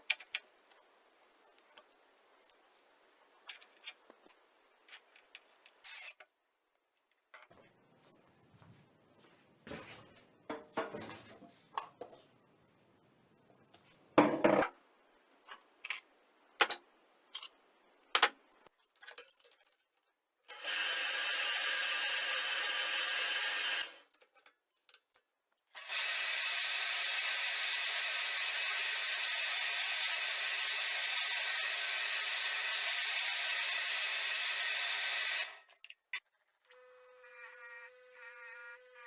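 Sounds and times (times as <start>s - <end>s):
small motor running: 36.7s - 39.0s.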